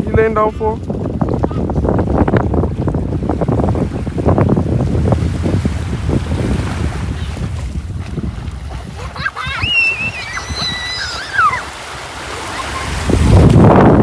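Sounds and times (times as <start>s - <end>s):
surf washing: 0.0s - 14.0s
wind buffeting microphone: 0.0s - 14.0s
distant high wavering calls: 9.7s - 11.6s.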